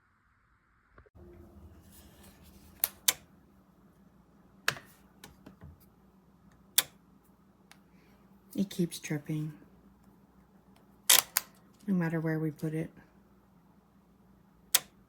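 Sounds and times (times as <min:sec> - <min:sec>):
faint hum: 0:00.0 - 0:15.0
sharp clicks: 0:11.1 - 0:11.6, 0:14.7 - 0:15.0.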